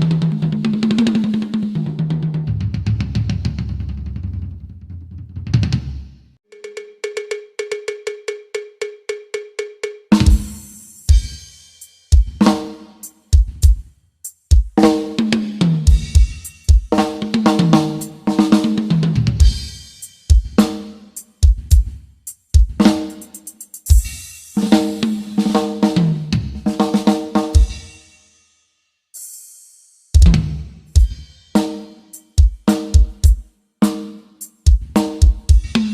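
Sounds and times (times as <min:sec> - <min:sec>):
snare drum: 0:00.0 - 0:04.6, 0:09.7 - 0:28.0, 0:29.2 - 0:35.9
cowbell-like ticks: 0:06.5 - 0:10.3
cymbal: 0:10.1 - 0:35.9.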